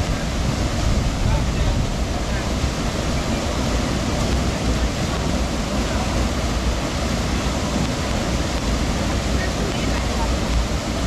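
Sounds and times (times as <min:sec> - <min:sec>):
river water rushing over falls: 0:00.0 - 0:11.0.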